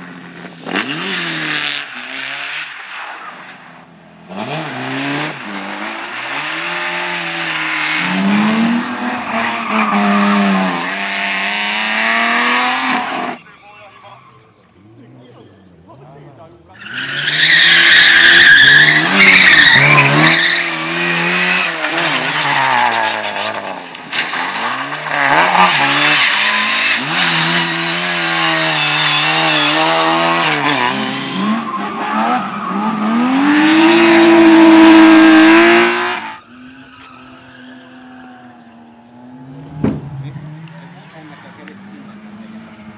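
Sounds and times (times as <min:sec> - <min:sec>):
rally car engine revving: 0:00.1 - 0:13.4, 0:16.7 - 0:42.9
tyres squealing: 0:12.6 - 0:42.9.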